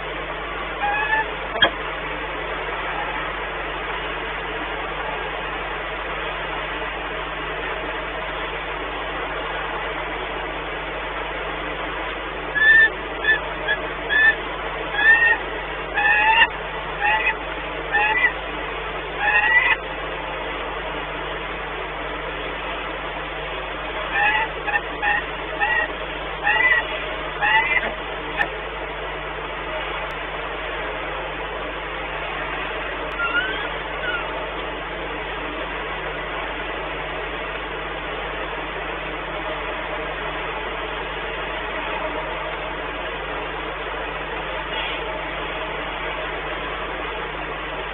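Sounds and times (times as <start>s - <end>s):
background hiss and hum: 0.0s - 47.9s
falcon high calls: 0.8s - 1.7s, 12.6s - 15.4s, 16.0s - 18.4s, 19.2s - 19.8s, 24.1s - 28.5s, 33.2s - 34.4s.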